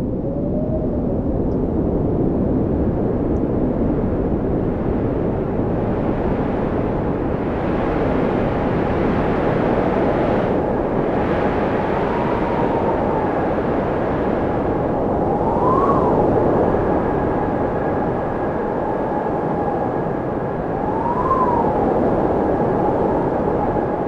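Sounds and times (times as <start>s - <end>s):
storm wind blowing: 0.0s - 24.0s
faint wind whistle: 8.4s - 24.0s.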